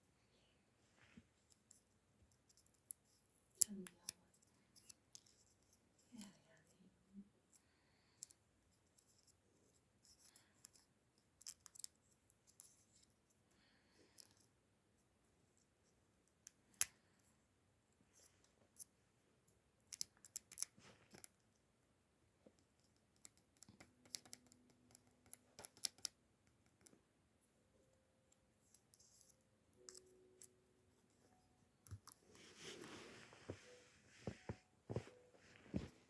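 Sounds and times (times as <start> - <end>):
faint clicks and taps: 33.3 - 36.0.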